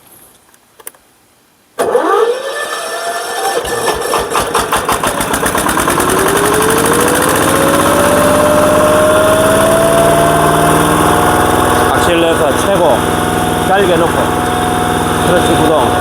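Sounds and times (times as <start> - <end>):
diesel tiller engine running: 1.8 - 16.0
rising whine: 5.1 - 16.0.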